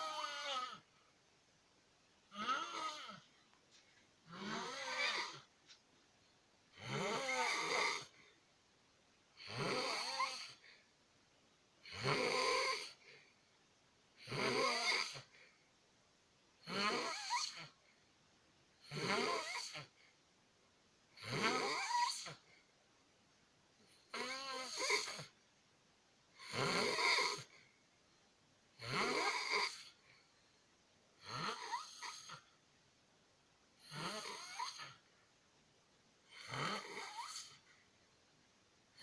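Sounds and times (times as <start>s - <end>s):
rhythmic snoring: 0.0s - 1.0s, 2.3s - 3.4s, 4.2s - 5.5s, 6.7s - 8.3s, 9.3s - 10.8s, 11.8s - 13.3s, 14.2s - 15.6s, 16.6s - 17.9s, 18.8s - 20.1s, 21.1s - 22.6s, 23.8s - 25.4s, 26.4s - 27.7s, 28.8s - 30.2s, 31.2s - 32.6s, 33.8s - 35.1s, 36.2s - 37.8s.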